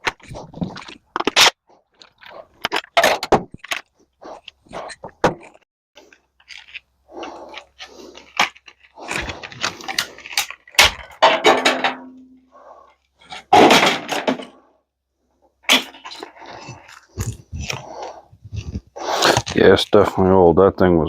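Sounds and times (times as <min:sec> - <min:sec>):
metal parts clanking and rattling: 0:08.3 - 0:12.4, 0:13.2 - 0:14.6.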